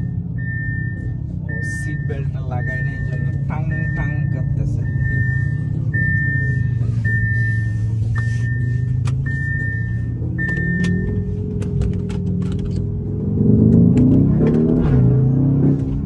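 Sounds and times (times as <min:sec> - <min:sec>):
car engine running: 0:00.0 - 0:16.0
seat belt warning chime: 0:00.4 - 0:11.5.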